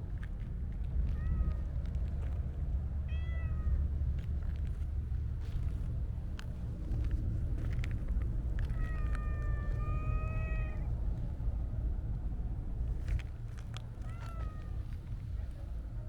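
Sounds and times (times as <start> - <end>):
low background rumble: 0.0 - 16.0
cat meowing: 3.1 - 3.8, 8.7 - 10.9, 14.0 - 14.9.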